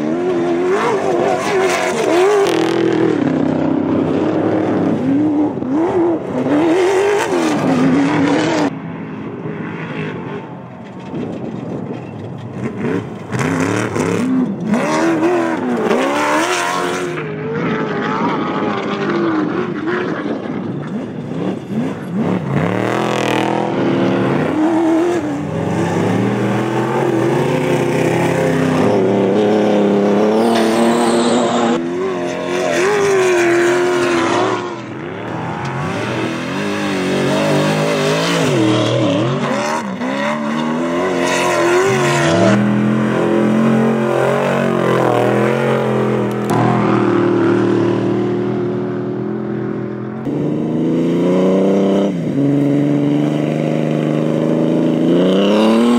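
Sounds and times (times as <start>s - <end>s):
race vehicle engines revving: 0.0s - 55.9s.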